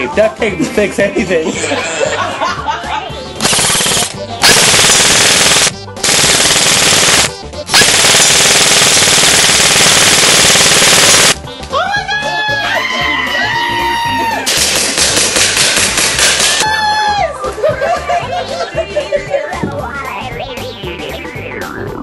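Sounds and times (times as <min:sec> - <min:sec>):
automatic gunfire bursts: 0:03.4 - 0:11.4.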